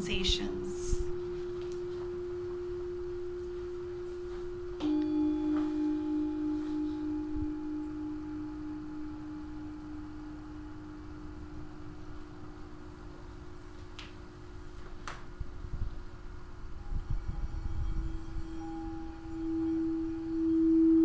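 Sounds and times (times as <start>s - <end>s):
singing bowls ringing: 0.0s - 21.0s.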